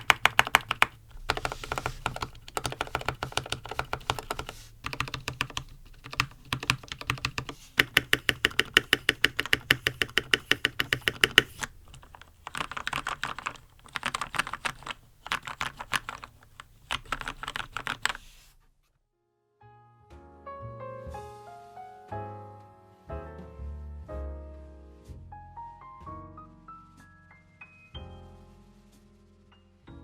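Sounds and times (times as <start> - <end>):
mechanical keyboard typing: 0.0 - 18.4.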